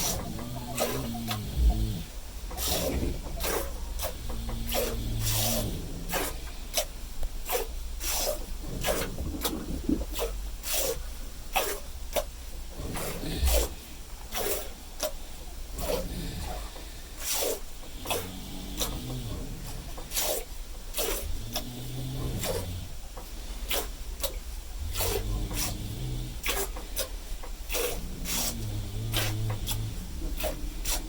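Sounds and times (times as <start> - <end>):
milk squirting into a pail: 8.2 - 11.0.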